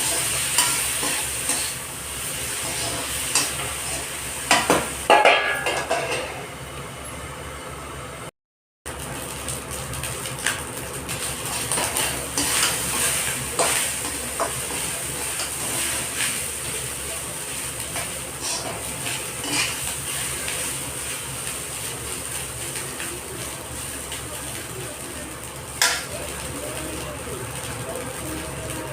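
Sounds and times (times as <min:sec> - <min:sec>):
spatula scraping a pan: 0:00.0 - 0:01.8, 0:02.4 - 0:04.7, 0:11.5 - 0:16.5, 0:18.0 - 0:20.6
rice sizzling in a pan: 0:00.0 - 0:06.4, 0:08.9 - 0:28.9.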